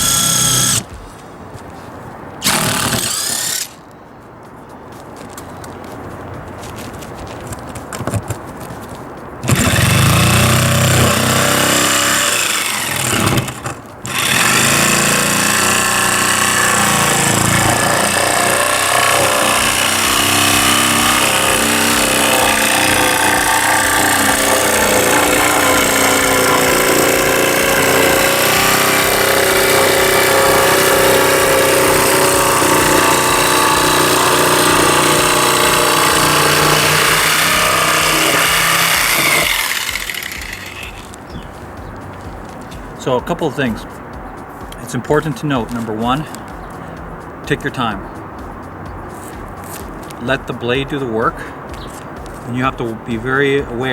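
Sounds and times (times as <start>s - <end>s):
jigsaw cutting carpeted deck: 0.0s - 0.9s, 2.4s - 3.8s, 9.4s - 41.2s.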